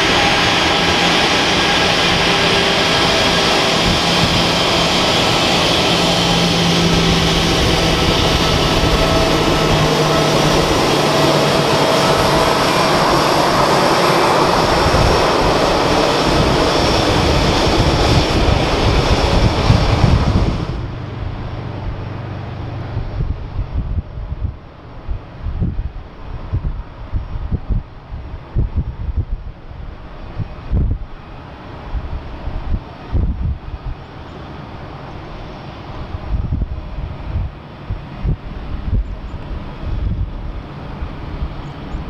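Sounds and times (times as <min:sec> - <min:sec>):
jet engines running: 0:00.0 - 0:25.4.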